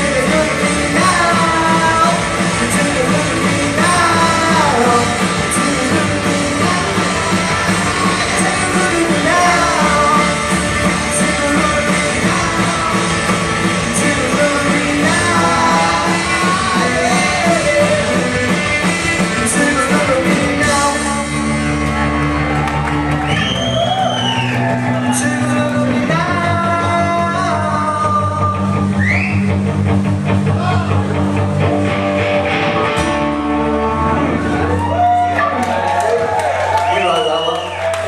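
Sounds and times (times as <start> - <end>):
person singing: 0.0 - 21.7, 25.1 - 28.7
live rock band: 0.0 - 38.0.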